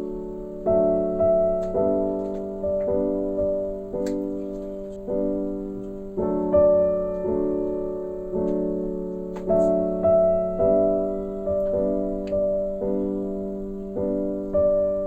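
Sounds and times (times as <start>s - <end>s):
slow piano chords: 0.0s - 15.0s.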